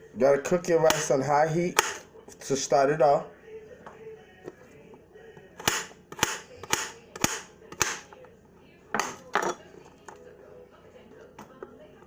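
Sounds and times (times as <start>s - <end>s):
knife chopping on cutting board: 1.7s - 2.0s, 5.6s - 8.0s.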